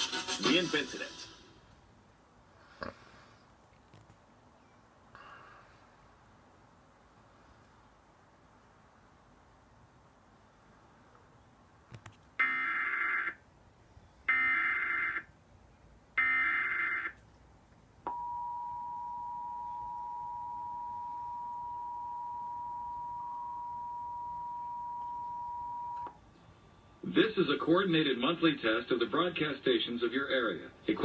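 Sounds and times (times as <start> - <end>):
two-tone attention signal: 18.1 - 26.1.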